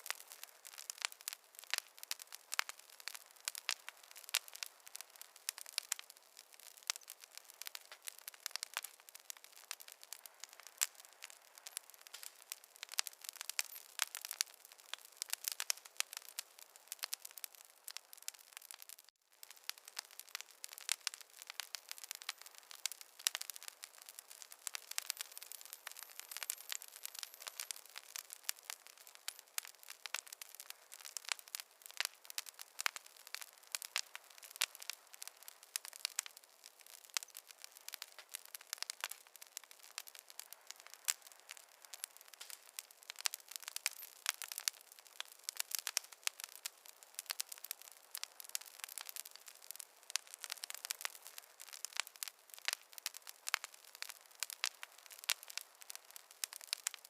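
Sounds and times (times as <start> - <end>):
wood fire crackling: 0.0 - 57.0.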